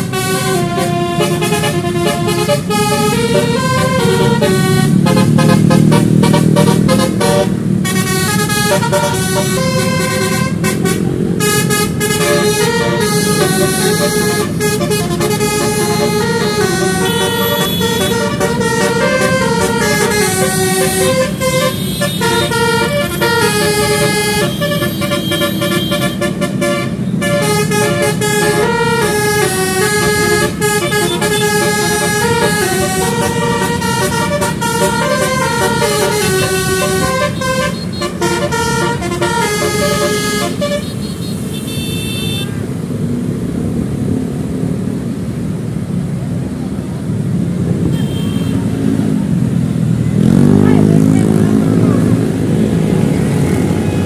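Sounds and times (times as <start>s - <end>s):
multi-tone horns playing tune: 0.0s - 42.6s
engine and road rumble: 0.0s - 54.0s.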